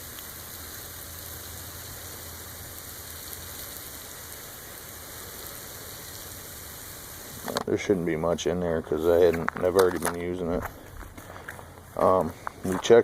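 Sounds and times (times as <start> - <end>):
pressure washer spray hissing: 0.0 - 7.6.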